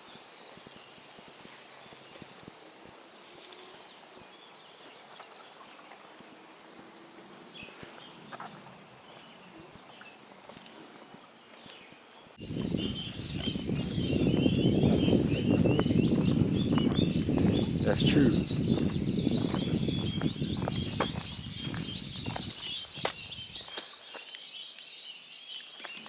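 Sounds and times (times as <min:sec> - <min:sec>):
high insect drone: 0:00.3 - 0:24.1
footsteps on forest trail: 0:07.6 - 0:26.0
birds chirping: 0:11.6 - 0:26.0.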